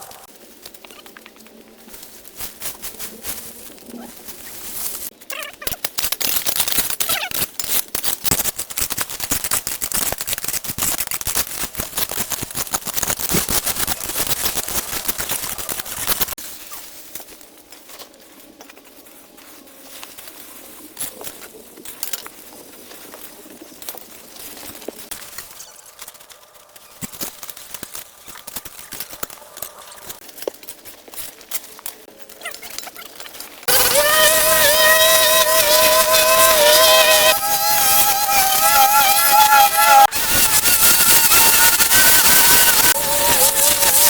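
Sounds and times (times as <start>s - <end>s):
rapid sharp clicks and crackles: 5.2s - 16.4s, 24.6s - 44.0s.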